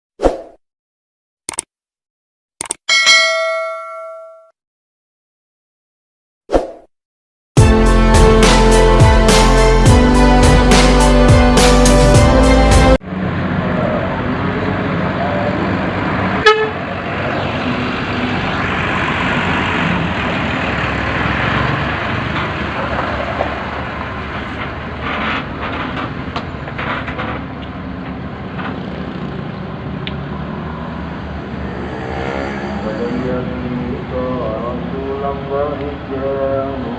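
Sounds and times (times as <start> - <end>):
bus engine running: 7.6 - 31.7, 32.8 - 36.9
horn toot: 16.4 - 16.8.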